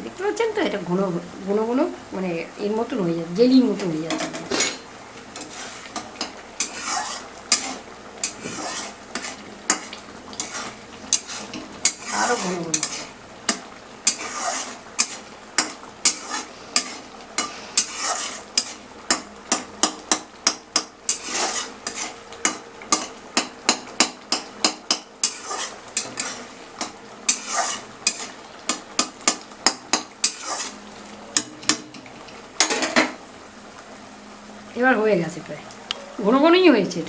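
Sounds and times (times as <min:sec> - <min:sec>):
utensil scraping pan: 0:04.1 - 0:30.8.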